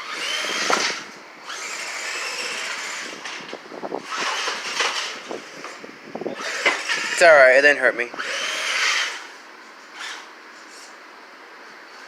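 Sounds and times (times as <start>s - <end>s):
toy truck electric motor whining: 0.0s - 7.4s, 8.2s - 9.3s, 9.9s - 10.3s
wheels scrabbling with clattering knocks: 3.0s - 5.8s.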